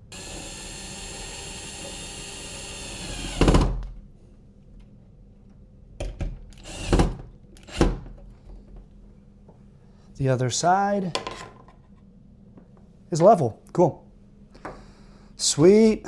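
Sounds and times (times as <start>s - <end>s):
cordless drill driving screw: 0.1s - 3.8s, 6.6s - 8.0s.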